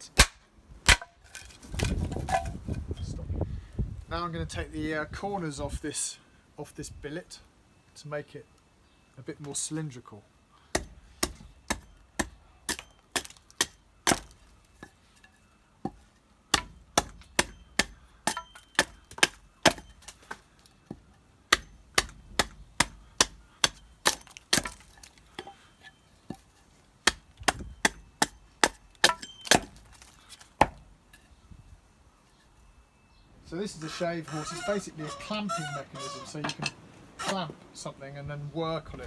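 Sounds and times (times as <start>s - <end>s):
axe chopping wood: 0.1s - 2.6s, 10.7s - 14.5s, 15.8s - 25.6s, 26.3s - 30.9s.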